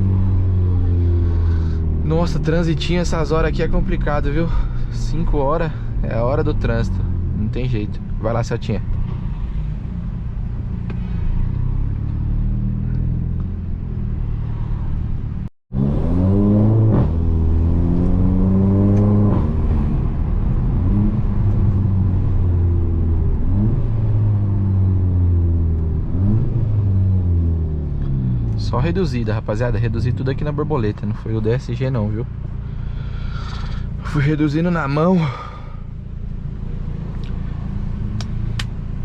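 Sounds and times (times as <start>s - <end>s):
car engine accelerating hard: 15.7s - 30.6s.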